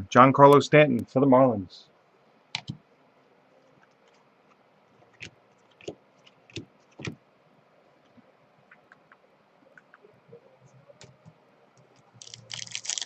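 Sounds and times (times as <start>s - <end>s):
sharp clicks and taps at desk: 2.5s - 2.8s.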